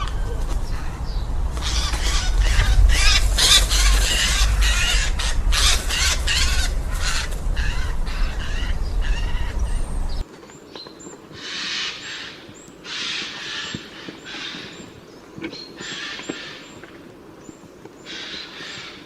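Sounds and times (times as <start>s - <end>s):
low wind rumble: 0.0s - 10.7s
jay rasping screeches: 1.6s - 9.5s.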